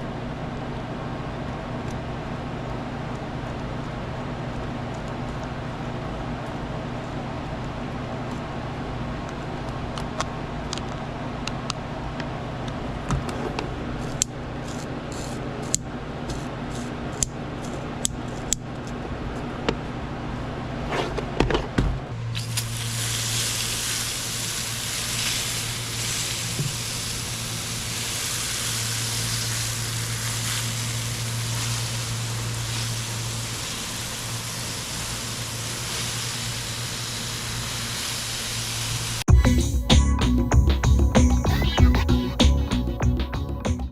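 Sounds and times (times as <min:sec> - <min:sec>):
water spraying hiss: 0:22.4 - 0:39.3.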